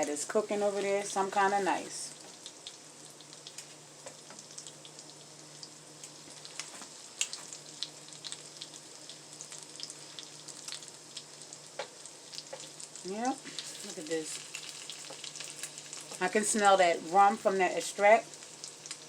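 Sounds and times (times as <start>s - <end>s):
food sizzling in a pan: 0.0s - 19.0s.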